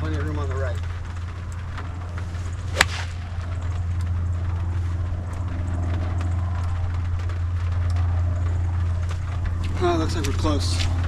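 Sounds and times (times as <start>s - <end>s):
steady low hum: 0.0s - 11.0s
golf club striking ball: 2.6s - 3.4s.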